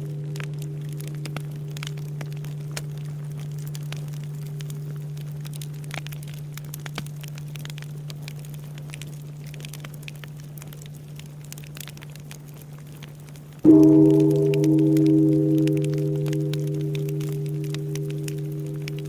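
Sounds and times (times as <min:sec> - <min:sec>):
temple bell humming: 0:00.0 - 0:02.7, 0:13.7 - 0:19.0
wood fire crackling and popping: 0:00.0 - 0:19.0.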